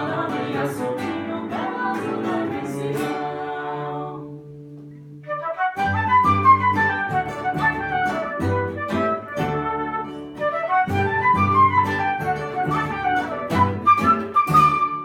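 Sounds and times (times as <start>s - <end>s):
guitar: 0.0s - 15.0s
flute runs: 5.3s - 15.0s.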